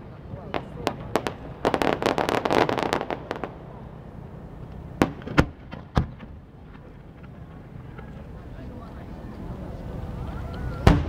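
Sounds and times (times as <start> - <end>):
fireworks crackling pops: 0.4 - 3.7, 4.6 - 8.3, 10.4 - 11.0
fireworks sharp bangs: 0.4 - 4.1, 5.0 - 7.2.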